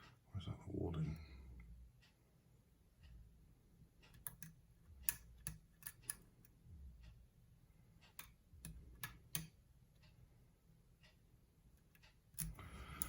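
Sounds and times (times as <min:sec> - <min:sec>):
lock pick metallic clicks: 0:04.1 - 0:06.3, 0:12.3 - 0:13.0.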